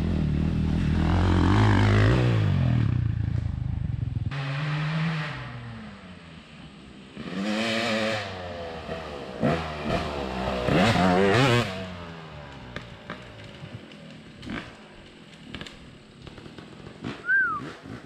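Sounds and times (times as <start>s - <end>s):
dirt bike engine revving: 0.0s - 6.2s, 7.1s - 13.8s.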